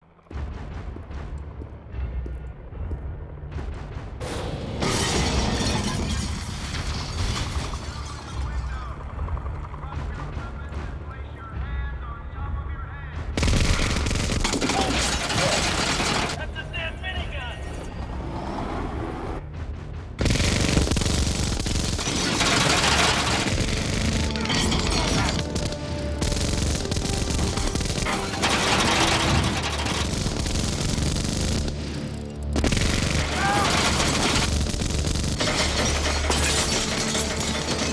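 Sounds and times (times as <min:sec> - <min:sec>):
film score music: 0:00.0 - 0:37.9
loud continuous crashing: 0:03.8 - 0:11.3, 0:13.4 - 0:16.6, 0:19.4 - 0:37.9
minigun firing rapid shots: 0:13.4 - 0:16.4, 0:20.2 - 0:37.9.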